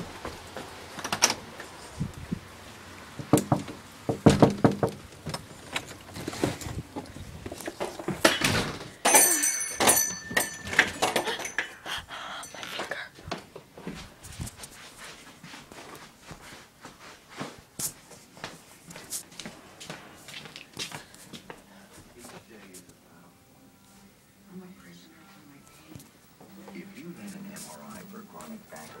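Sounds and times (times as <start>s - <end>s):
door knocks and thuds: 3.2s - 5.4s.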